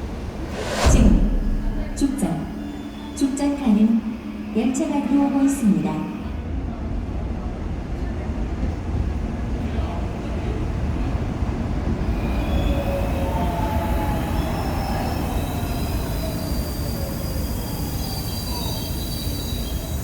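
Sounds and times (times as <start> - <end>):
electric train rumbling: 0.0 - 20.0
wheels and brakes squealing: 12.0 - 20.0.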